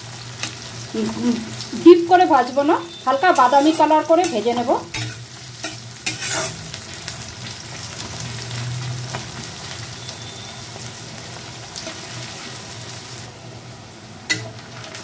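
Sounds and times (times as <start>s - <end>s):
onion sizzling in hot oil: 0.0s - 15.0s.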